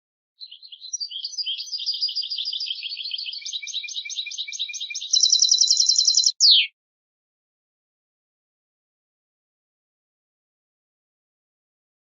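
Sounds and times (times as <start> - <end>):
goldfinch singing: 0.4 - 6.7.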